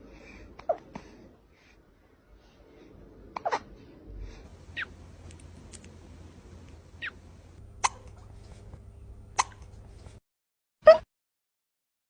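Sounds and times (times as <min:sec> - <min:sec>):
kitten hiccuping: 0:07.8 - 0:08.1, 0:09.4 - 0:09.6.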